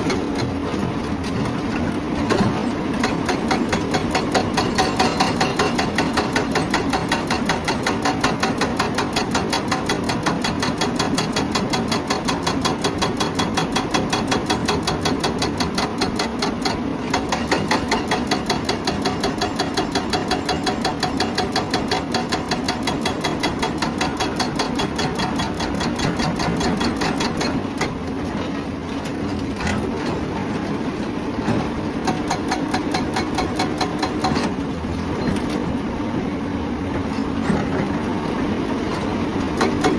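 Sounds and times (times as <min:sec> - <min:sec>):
excavator engine running: 0:00.0 - 0:39.9
hydraulic breaker hammering rock: 0:02.2 - 0:28.0, 0:31.4 - 0:35.6, 0:39.0 - 0:39.9.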